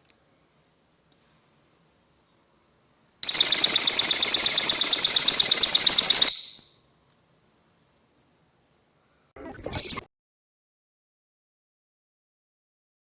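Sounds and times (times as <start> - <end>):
high-pitched warbling alarm siren: 9.4 - 10.1.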